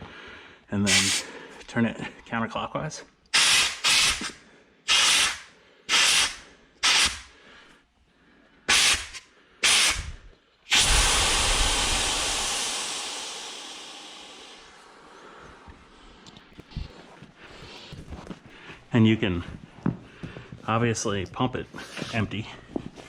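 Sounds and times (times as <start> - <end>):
air hissing out of a valve: 0.9 - 1.3, 3.4 - 7.3, 8.7 - 15.0.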